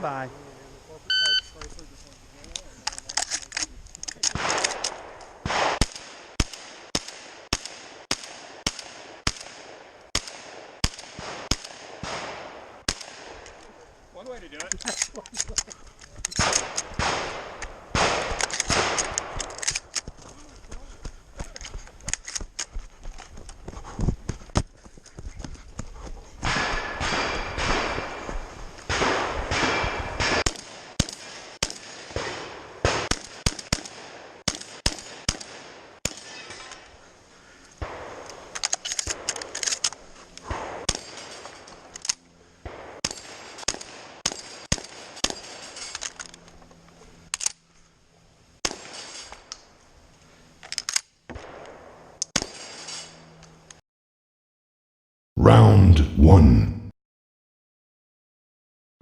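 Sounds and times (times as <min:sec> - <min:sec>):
shotgun firing: 0:04.3 - 0:13.4, 0:16.4 - 0:19.4, 0:26.4 - 0:36.5, 0:40.5 - 0:41.4, 0:42.6 - 0:45.7, 0:48.6 - 0:49.1.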